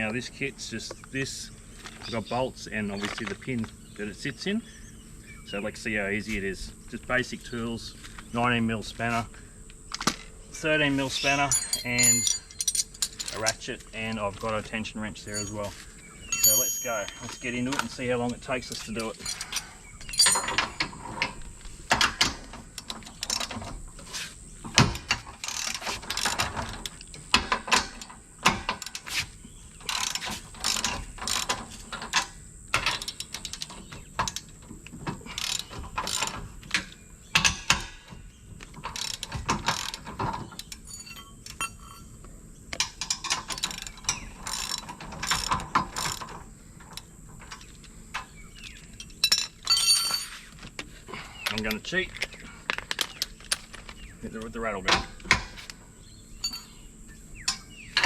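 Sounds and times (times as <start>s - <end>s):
clinks of steel spanners: 11.0s - 23.6s, 38.8s - 42.2s, 48.6s - 50.6s, 56.4s - 56.8s.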